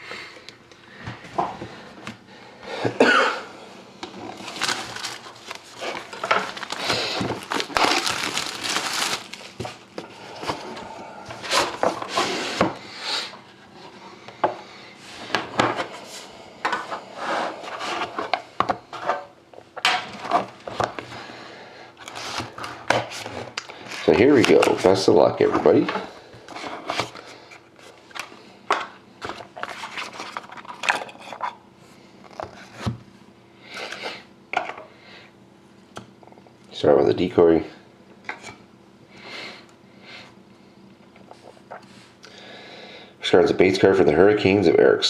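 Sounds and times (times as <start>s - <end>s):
cardboard box rustling: 4.3s - 9.8s.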